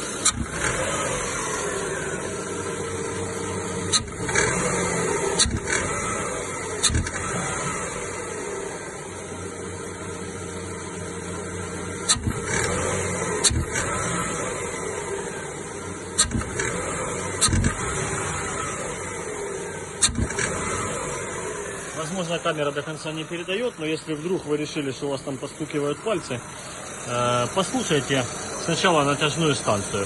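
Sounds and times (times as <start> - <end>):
car engine revving: 0.0 - 30.0
belt tensioner knocking: 5.4 - 6.0, 13.4 - 13.9, 16.2 - 17.9, 20.0 - 20.6.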